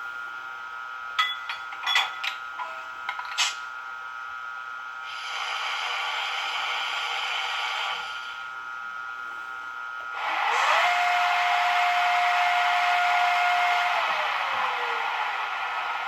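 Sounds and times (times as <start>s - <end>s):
hiss: 5.0s - 8.5s
electric motor whine: 5.1s - 16.0s.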